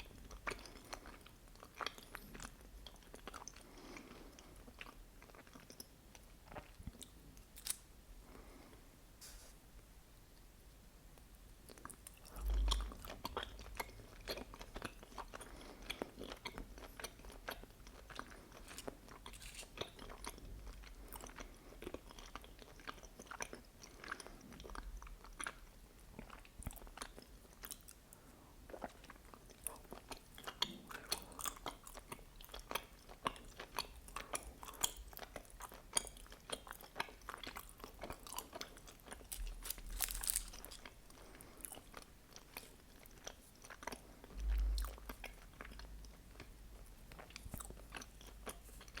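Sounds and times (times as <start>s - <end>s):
wet chewing and mouth clicks: 11.7s - 28.1s, 28.7s - 49.0s.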